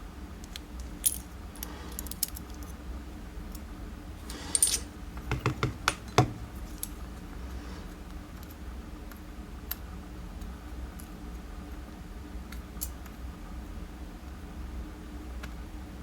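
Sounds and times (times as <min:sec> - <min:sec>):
small metal lock parts clicking: 0:01.9 - 0:02.8, 0:04.3 - 0:04.9.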